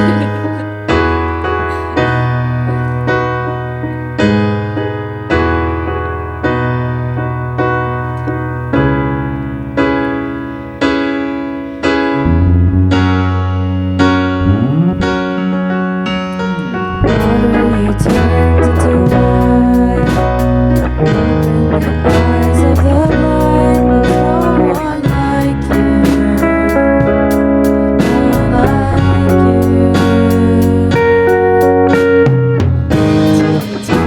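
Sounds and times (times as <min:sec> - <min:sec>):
piano chords ringing: 0:00.0 - 0:34.0
sustained low bass notes: 0:12.0 - 0:31.8.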